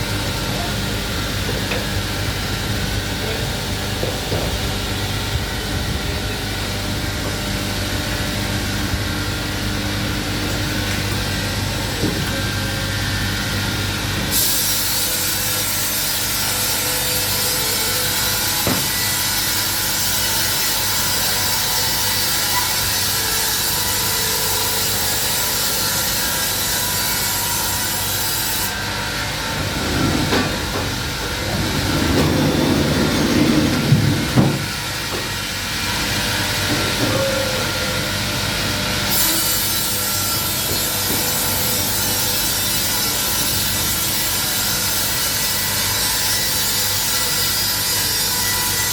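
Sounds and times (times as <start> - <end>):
band sawmill humming: 0.0 - 38.8
saw blade hissing through wood: 14.3 - 16.8
loud rumble: 29.3 - 34.9.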